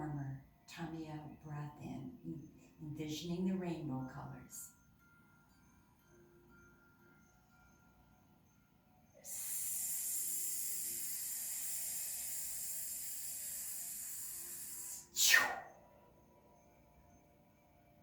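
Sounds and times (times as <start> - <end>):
person whispering breath: 9.2 - 15.6.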